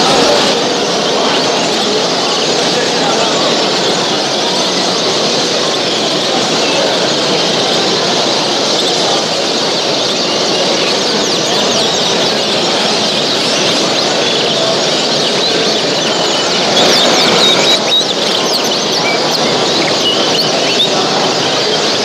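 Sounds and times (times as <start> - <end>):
caged birds chirping: 0.0 - 22.0.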